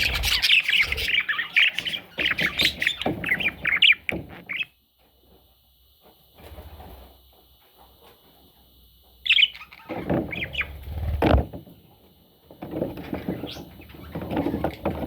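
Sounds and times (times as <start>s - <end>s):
budgerigar chirping: 0.0s - 4.8s, 9.3s - 10.7s.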